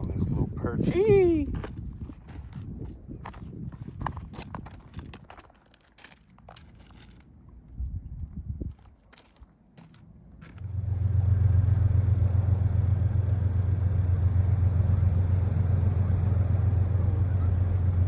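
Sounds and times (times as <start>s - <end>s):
engine humming: 9.9s - 18.0s.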